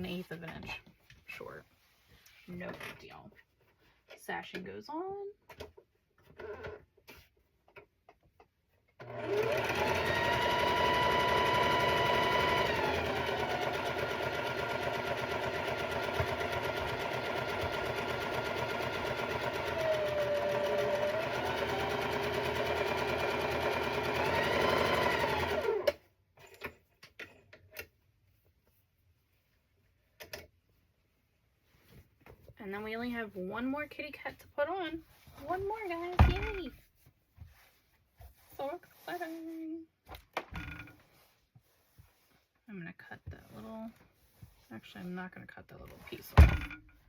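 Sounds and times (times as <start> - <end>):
sewing machine stitching: 9.0 - 26.0.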